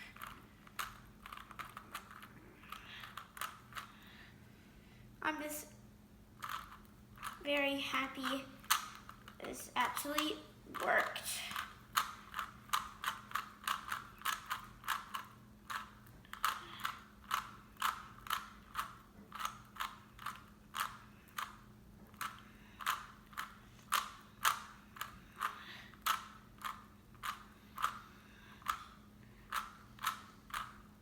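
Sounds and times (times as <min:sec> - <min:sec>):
puzzle cube clicking: 0:11.5 - 0:28.0.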